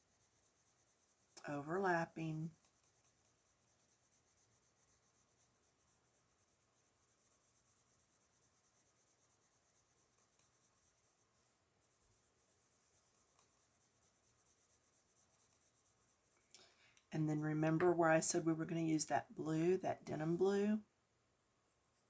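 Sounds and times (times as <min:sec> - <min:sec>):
pencil scratching on paper: 0:00.0 - 0:16.4.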